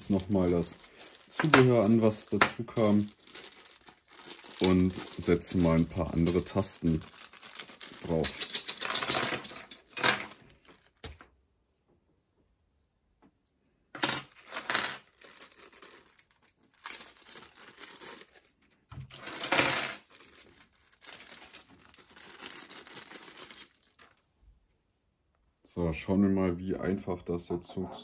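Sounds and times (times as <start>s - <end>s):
plastic packaging rustling: 0.0s - 11.2s, 14.2s - 24.3s.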